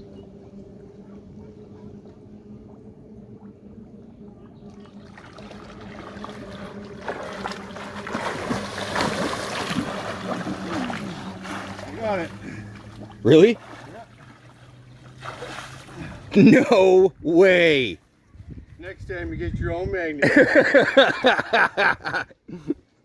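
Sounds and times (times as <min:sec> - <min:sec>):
steady low hum: 0:00.0 - 0:22.8
water churning and splashing: 0:01.8 - 0:18.0.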